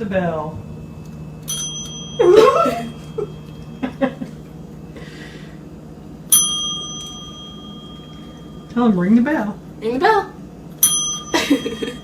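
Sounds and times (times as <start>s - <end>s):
small bell ding: 0.6s - 4.6s, 6.3s - 8.8s, 10.8s - 12.0s.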